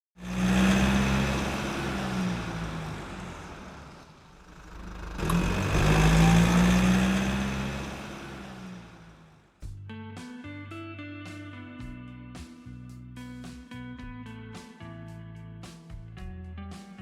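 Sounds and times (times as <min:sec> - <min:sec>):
car engine running: 0:00.2 - 0:09.8.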